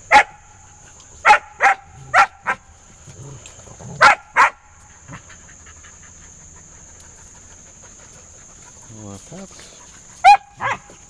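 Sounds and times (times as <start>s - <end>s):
puppy barking: 0.1s - 0.4s, 1.2s - 2.6s, 4.0s - 4.6s, 10.2s - 10.9s.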